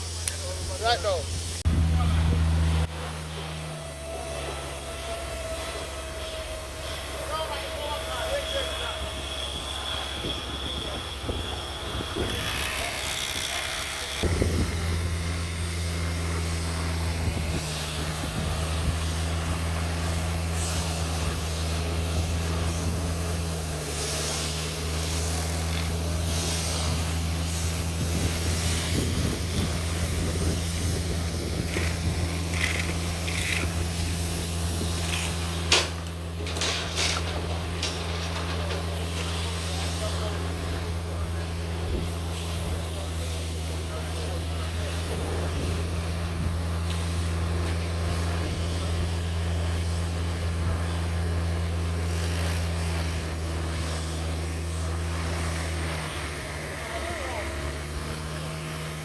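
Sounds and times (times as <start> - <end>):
engine humming: 0.0 - 59.0.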